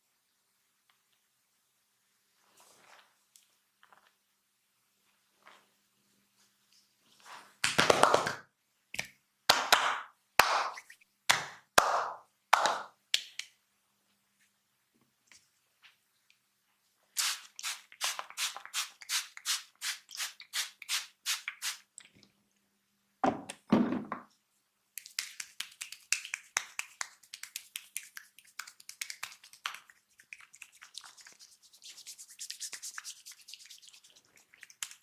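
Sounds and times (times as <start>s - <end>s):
sharp hand slaps: 9.0s - 13.5s.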